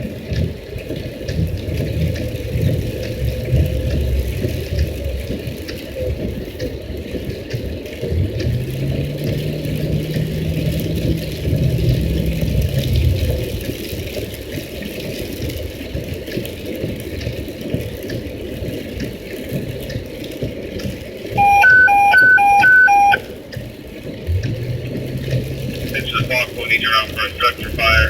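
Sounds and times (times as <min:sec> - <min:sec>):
low engine hum: 0:00.0 - 0:19.8, 0:21.4 - 0:28.0
engine and road rumble: 0:00.0 - 0:28.0
alternating high-low alert beeps: 0:21.4 - 0:23.3.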